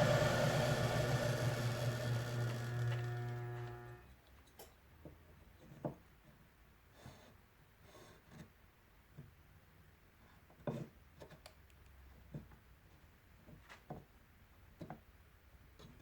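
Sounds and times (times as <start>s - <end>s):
motor humming: 0.0s - 4.0s.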